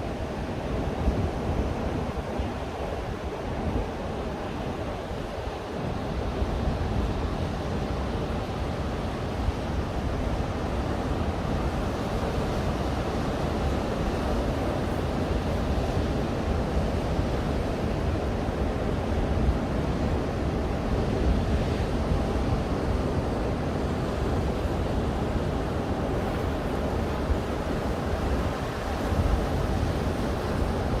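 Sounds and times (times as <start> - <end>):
wind rumble on microphone: 0.0 - 31.0
surf washing onto beach: 21.4 - 31.0.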